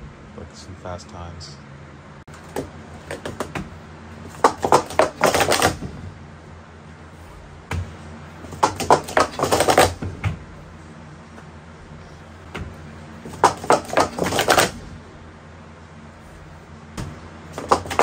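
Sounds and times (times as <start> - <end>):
stacking cups clacking: 4.3 - 5.9, 8.4 - 10.4, 13.2 - 14.9, 17.5 - 18.0.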